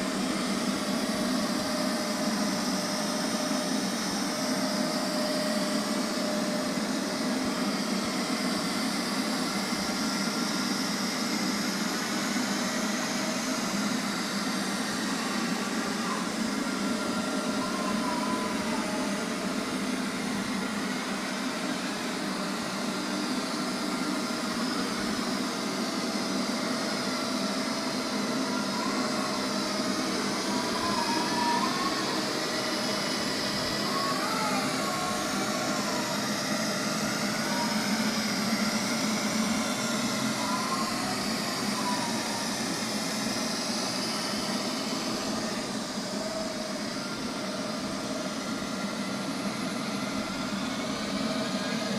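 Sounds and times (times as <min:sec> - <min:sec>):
robot vacuum whirring: 0:00.1 - 0:51.9.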